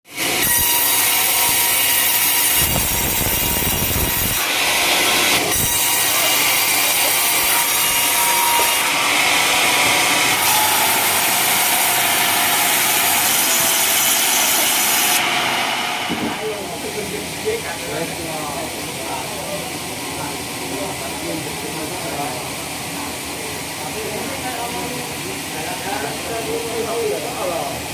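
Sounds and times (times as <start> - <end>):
saw cutting through log: 0.1 - 19.2.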